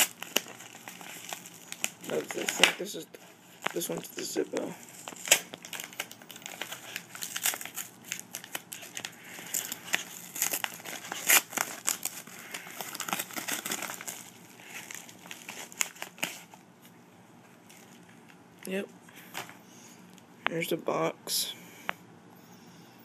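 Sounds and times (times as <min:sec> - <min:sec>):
packaging crinkling: 0:00.0 - 0:18.4.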